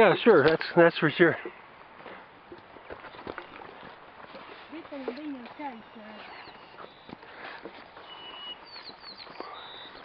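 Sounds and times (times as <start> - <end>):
footsteps crunching on dirt: 1.8 - 10.0
short high bird chirps: 8.0 - 10.0.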